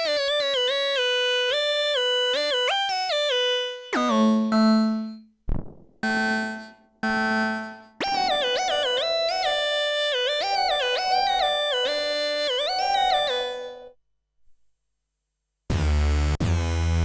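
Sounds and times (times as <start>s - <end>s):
synthesizer gliding lead melody: 0.0s - 5.2s, 6.0s - 13.9s.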